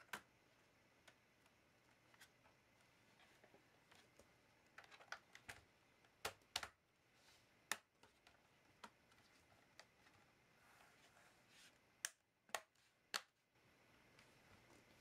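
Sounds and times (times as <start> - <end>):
laptop clicks and taps: 5.0 - 6.8, 7.6 - 9.1, 12.0 - 13.4.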